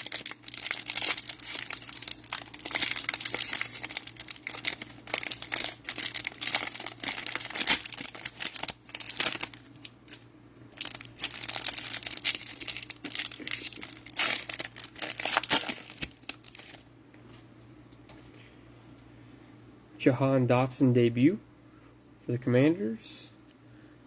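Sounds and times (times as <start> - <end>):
cellophane wrappers crinkling and tearing: 0.0 - 10.2, 10.8 - 16.8.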